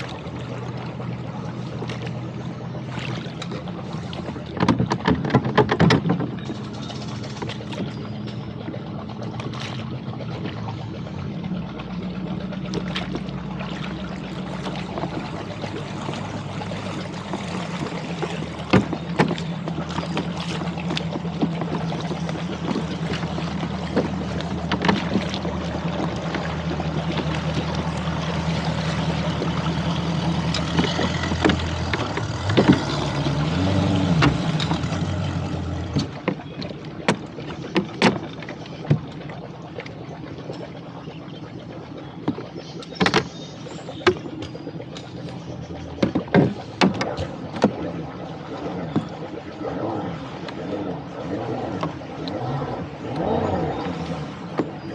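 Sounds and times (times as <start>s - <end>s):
knocks and clunks: 4.5s - 7.8s, 17.2s - 21.9s, 29.0s - 39.2s, 45.9s - 47.8s
engine idling and revving: 14.4s - 36.4s, 49.6s - 54.9s.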